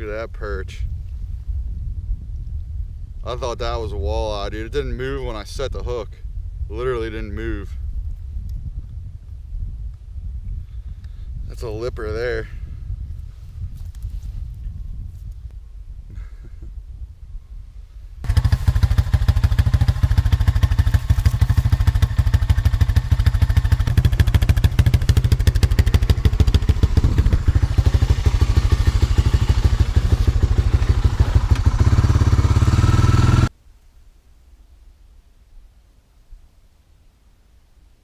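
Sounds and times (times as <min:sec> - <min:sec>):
small gasoline engine running fast: 0:18.2 - 0:33.5.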